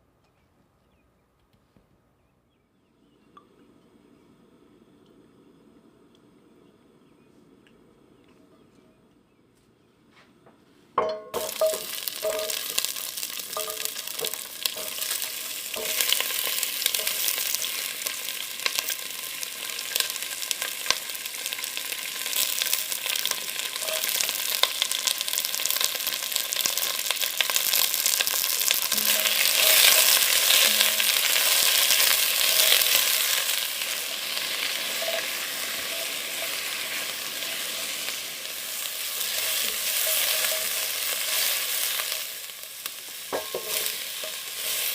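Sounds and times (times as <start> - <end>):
food sizzling in oil: 11.0 - 44.9
utensil scraping and stirring: 11.4 - 17.8, 28.4 - 38.2, 38.9 - 41.8, 43.3 - 44.9.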